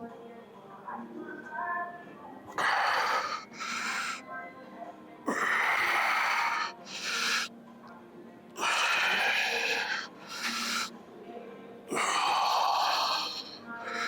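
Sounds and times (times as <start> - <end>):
man breathing hard: 2.6 - 4.2, 5.3 - 7.5, 8.6 - 10.9, 11.9 - 14.0.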